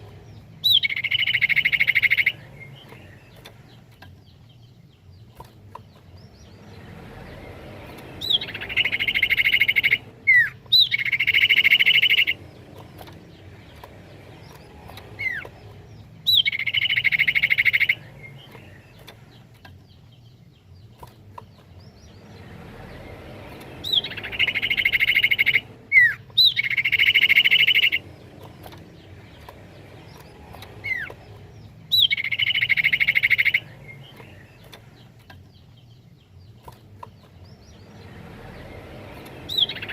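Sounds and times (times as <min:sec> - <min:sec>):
bird whistle and trill: 0:00.6 - 0:03.2, 0:08.2 - 0:12.4, 0:15.0 - 0:15.6, 0:16.2 - 0:19.0, 0:23.8 - 0:28.0, 0:30.2 - 0:31.2, 0:31.9 - 0:34.6, 0:39.5 - 0:39.9.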